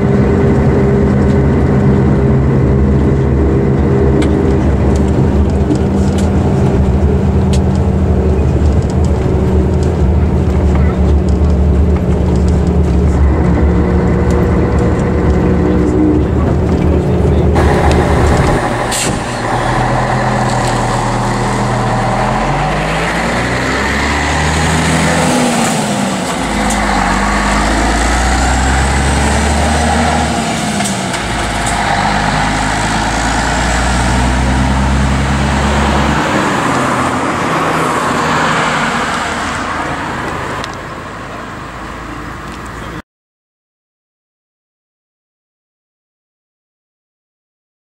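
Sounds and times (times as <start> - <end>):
bus diesel engine: 0.0 - 43.0.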